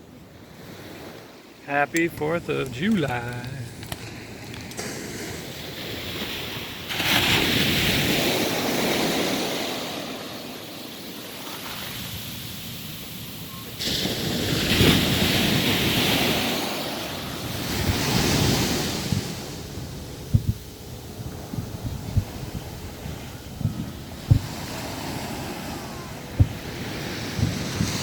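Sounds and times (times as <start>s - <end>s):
surf breaking on a beach: 0.0s - 28.0s
wind buffeting microphone: 13.7s - 28.0s.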